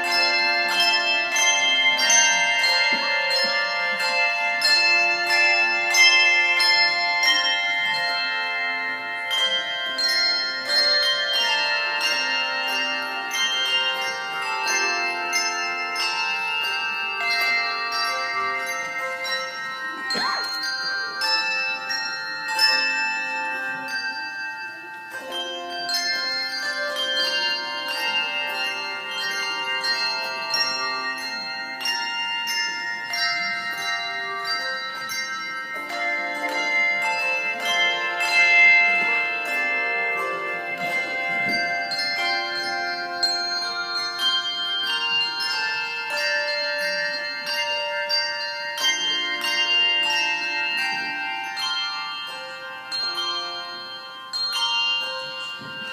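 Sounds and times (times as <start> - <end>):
handbell choir playing: 0.0 - 55.9.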